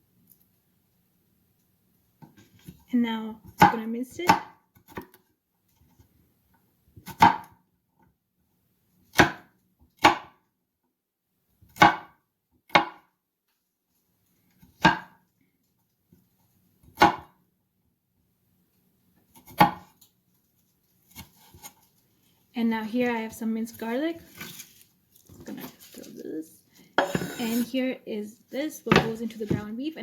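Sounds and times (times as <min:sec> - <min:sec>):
knife chopping on cutting board: 0:07.0 - 0:07.6, 0:09.1 - 0:10.4, 0:11.7 - 0:13.1, 0:14.8 - 0:15.2, 0:16.8 - 0:17.4, 0:19.3 - 0:20.0, 0:27.0 - 0:27.6, 0:28.9 - 0:29.7.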